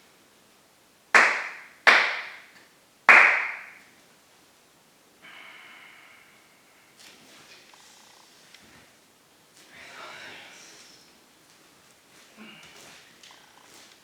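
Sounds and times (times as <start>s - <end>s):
hand claps with echo: 1.1s - 3.9s.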